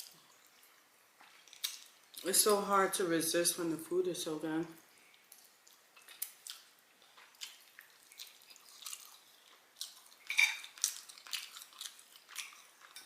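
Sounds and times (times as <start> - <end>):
wet chewing and lip-smacking: 0.0 - 2.2, 5.0 - 13.0.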